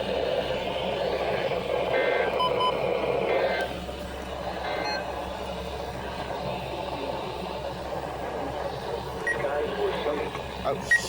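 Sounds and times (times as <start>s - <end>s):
short electronic beeps: 2.4s - 2.8s.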